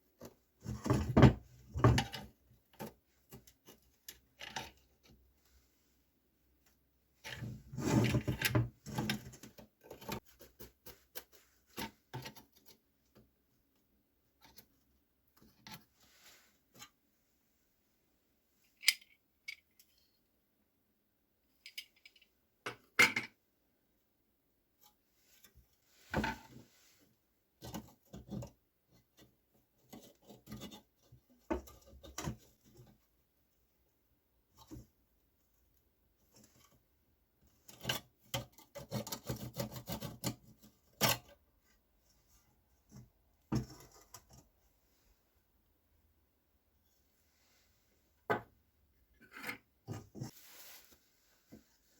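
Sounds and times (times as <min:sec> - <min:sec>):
rubbing and knocking of lamp parts: 0:00.0 - 0:05.2, 0:07.2 - 0:13.3, 0:27.6 - 0:33.0, 0:42.3 - 0:44.6.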